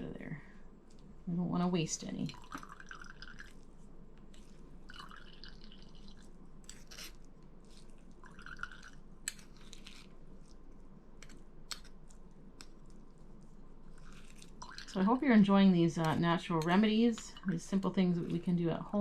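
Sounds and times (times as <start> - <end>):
juice dripping: 2.2 - 10.6, 13.8 - 15.3
wet squishing of berries: 2.2 - 10.6, 11.7 - 15.3.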